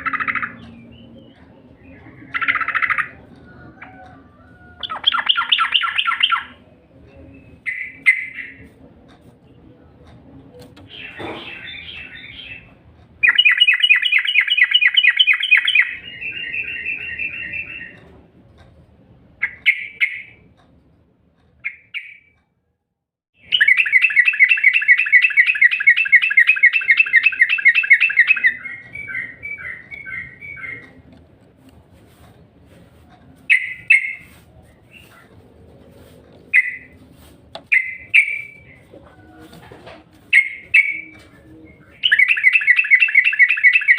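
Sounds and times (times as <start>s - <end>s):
bulbul chattering trills: 0.0s - 3.4s.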